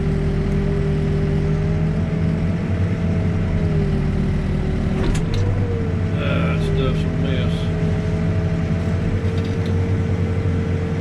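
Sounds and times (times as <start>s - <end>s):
backhoe diesel engine running: 0.0s - 11.0s
high whine: 8.8s - 10.3s.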